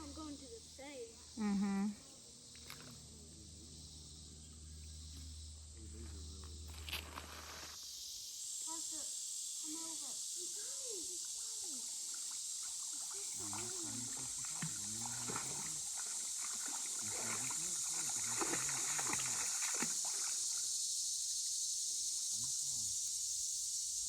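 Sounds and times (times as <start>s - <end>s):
insects hissing: 0.0s - 24.0s
water splashing in a creek: 10.6s - 20.8s.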